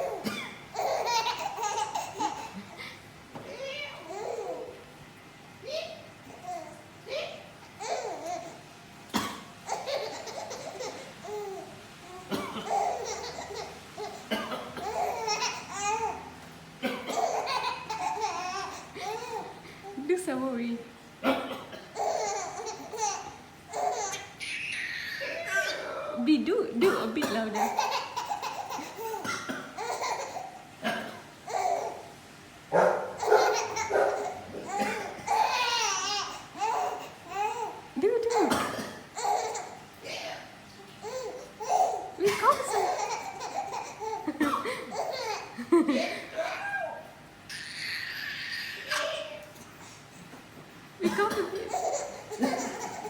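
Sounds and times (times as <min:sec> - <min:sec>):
baby laughing and squealing: 0:00.8 - 0:02.6, 0:09.7 - 0:11.7, 0:17.1 - 0:19.6, 0:22.0 - 0:25.9, 0:27.6 - 0:29.2, 0:29.8 - 0:30.6, 0:33.2 - 0:38.5, 0:41.0 - 0:44.3, 0:44.9 - 0:49.5, 0:51.7 - 0:53.0
man coughing sharply: 0:21.2 - 0:22.0, 0:26.8 - 0:27.6, 0:34.8 - 0:35.3, 0:38.4 - 0:39.0, 0:42.2 - 0:42.8, 0:44.4 - 0:44.8, 0:51.0 - 0:51.7.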